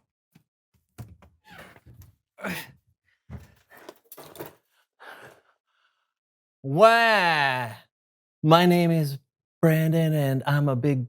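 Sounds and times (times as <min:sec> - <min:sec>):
man sighing and groaning: 0:02.4 - 0:02.8.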